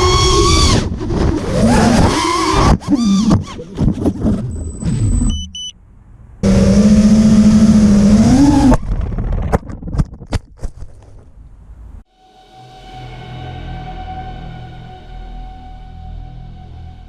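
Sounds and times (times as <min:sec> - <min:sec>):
short high beeps: 0:05.1 - 0:05.8
drone motors whining: 0:06.4 - 0:09.1.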